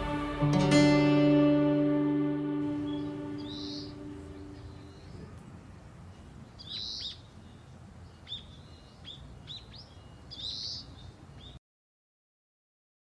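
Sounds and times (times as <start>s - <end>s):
small birds chirping: 2.7s - 11.6s.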